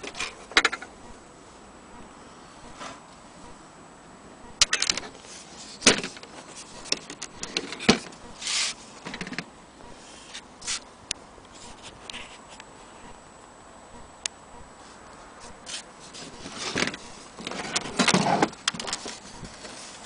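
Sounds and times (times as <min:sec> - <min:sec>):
short scrape: 0:02.8 - 0:03.0, 0:08.4 - 0:08.8.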